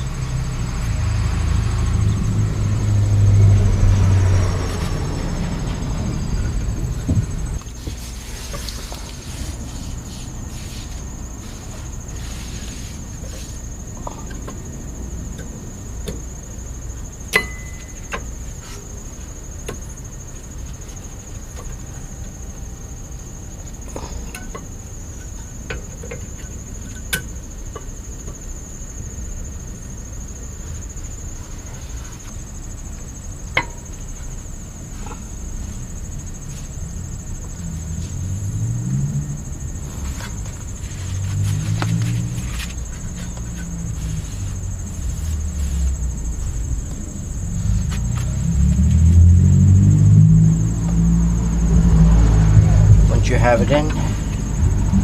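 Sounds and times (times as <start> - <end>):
insect-like chorus: 0.0 - 55.0
low hum: 33.6 - 55.0.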